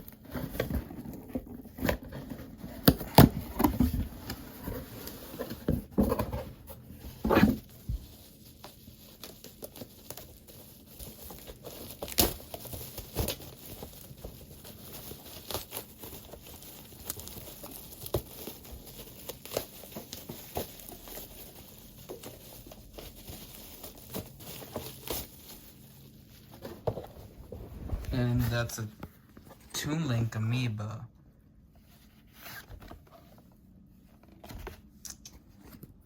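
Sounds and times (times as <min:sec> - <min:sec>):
packaging crinkling and tearing: 0:07.0 - 0:27.0.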